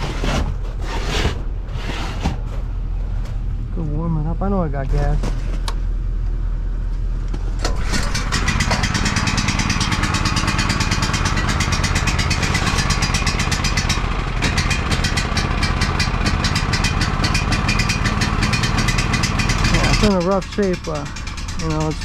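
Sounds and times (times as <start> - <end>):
small gasoline engine putter: 16.7 - 22.0.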